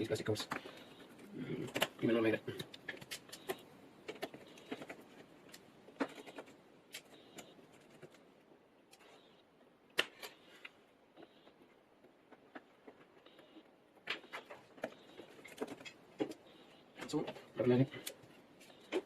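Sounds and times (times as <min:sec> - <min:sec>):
small tools clicking on phone: 0:02.6 - 0:08.2.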